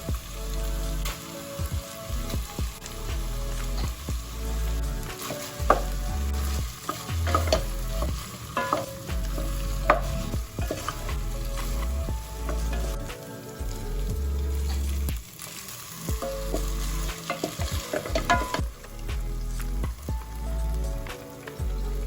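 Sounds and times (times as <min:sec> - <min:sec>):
food sizzling in a pan: 0:00.0 - 0:22.0
utensil scraping a pan: 0:04.6 - 0:13.1.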